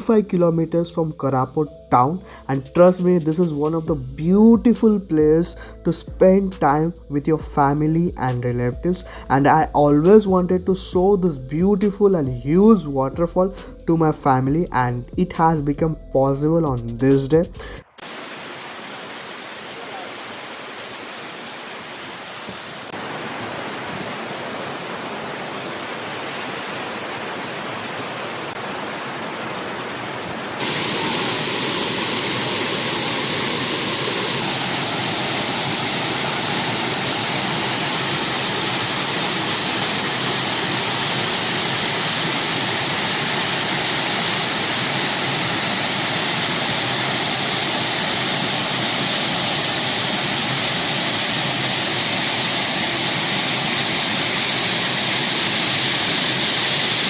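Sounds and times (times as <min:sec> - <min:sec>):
waterfall rushing: 0:17.9 - 0:57.0.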